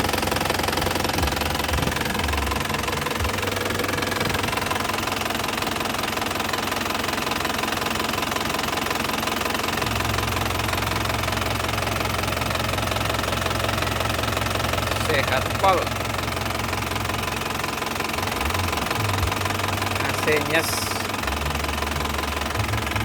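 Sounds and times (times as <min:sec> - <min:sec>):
motorcycle engine idling: 0:00.0 - 0:23.0.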